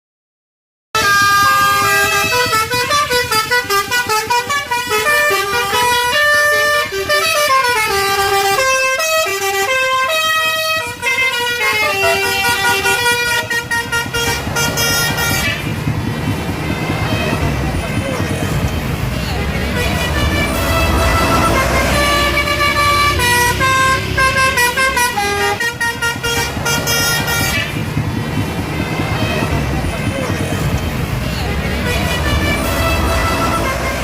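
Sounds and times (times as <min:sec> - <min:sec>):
musical air horn melody: 0:01.0 - 0:15.8, 0:19.3 - 0:27.8, 0:31.4 - 0:34.0
low vehicle rumble: 0:01.0 - 0:34.0.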